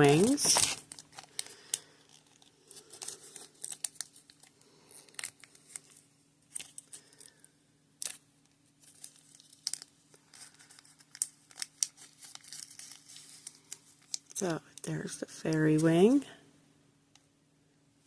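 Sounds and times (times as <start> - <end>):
plastic packaging crinkling and tearing: 0.0 - 7.3, 8.0 - 14.8.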